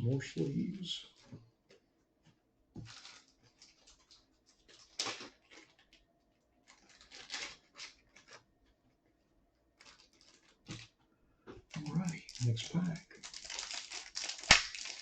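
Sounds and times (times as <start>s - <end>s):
cards and plastic sleeves rustling: 2.8s - 6.0s, 6.6s - 8.6s, 9.7s - 11.0s, 11.6s - 15.0s.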